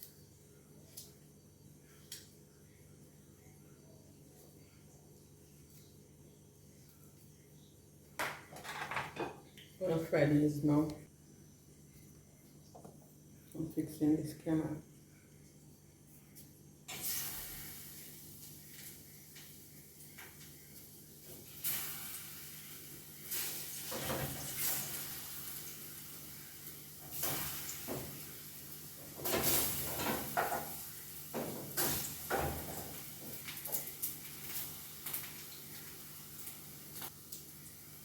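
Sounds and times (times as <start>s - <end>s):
slices sizzling in frying oil: 16.4s - 38.0s.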